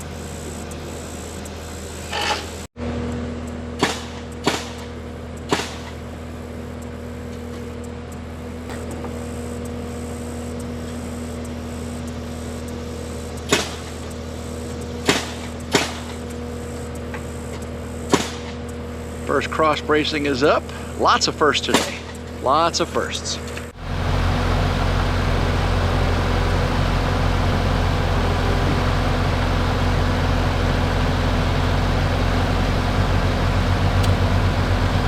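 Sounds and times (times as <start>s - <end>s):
idling engine hum: 23.8s - 35.0s.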